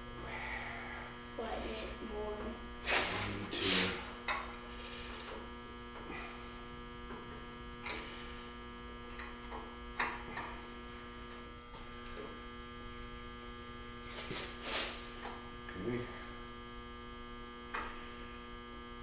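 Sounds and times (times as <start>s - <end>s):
electrical mains hum: 0.0s - 19.0s.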